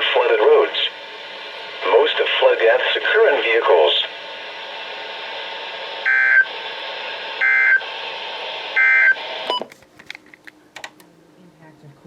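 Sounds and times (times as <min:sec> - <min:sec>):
broadcast hiss: 0:00.0 - 0:10.4
digital data tone bursts: 0:06.0 - 0:06.5, 0:07.4 - 0:07.8, 0:08.8 - 0:09.6.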